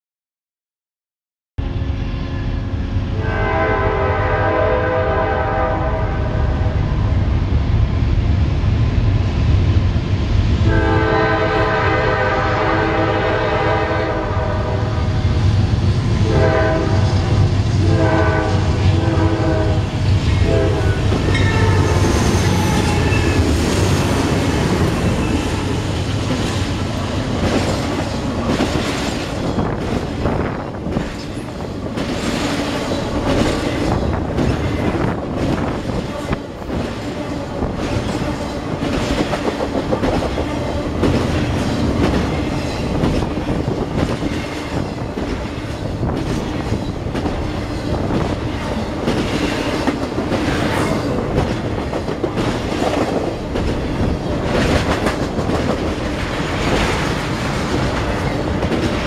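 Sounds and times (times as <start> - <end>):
train horn blasts: 2.2 - 6.8, 10.6 - 15.1, 16.2 - 23.5
train wheels clattering on rails: 16.9 - 59.0.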